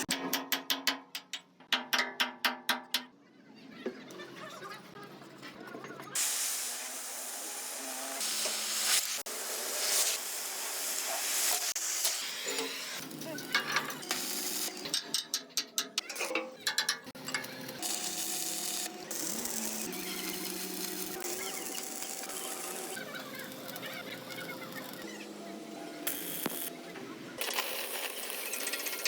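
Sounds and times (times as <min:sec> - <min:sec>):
welding arc crackling: 0:06.2 - 0:15.1, 0:17.2 - 0:25.1, 0:26.0 - 0:26.7, 0:27.4 - 0:29.0.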